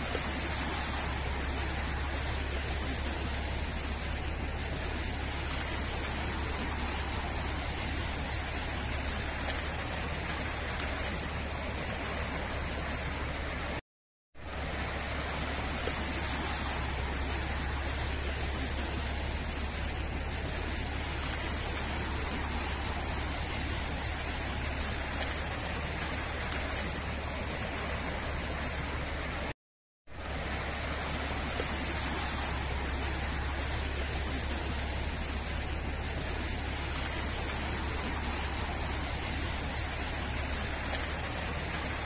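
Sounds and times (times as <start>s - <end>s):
deep rumble: 0.0s - 13.8s, 14.4s - 29.5s, 30.2s - 42.0s
floodwater rushing: 0.0s - 13.8s, 14.4s - 42.0s.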